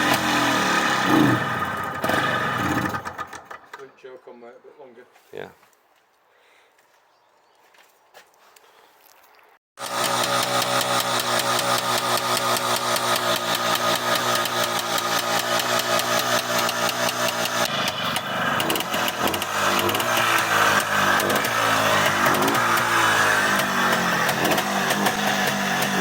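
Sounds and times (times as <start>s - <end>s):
motorbike engine idling: 9.8s - 26.0s.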